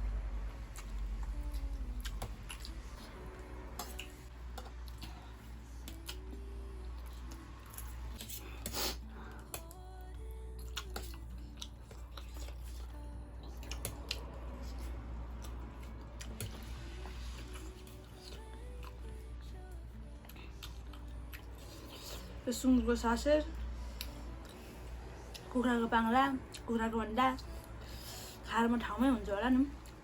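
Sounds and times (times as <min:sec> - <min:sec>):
chewing: 0:00.7 - 0:09.8, 0:10.5 - 0:19.2, 0:20.2 - 0:22.4.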